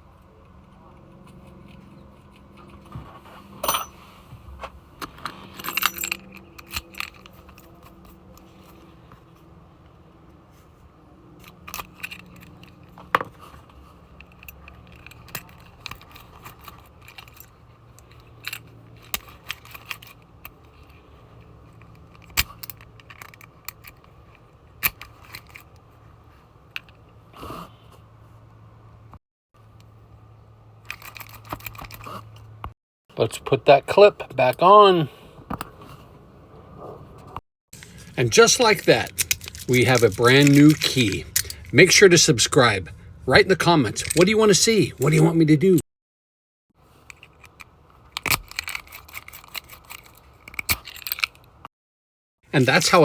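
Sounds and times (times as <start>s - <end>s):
metal lock parts clinking: 3.6s - 4.0s, 5.0s - 8.8s, 11.4s - 13.4s, 14.1s - 25.9s, 30.8s - 32.1s, 37.8s - 42.8s, 43.6s - 45.3s, 47.0s - 51.6s.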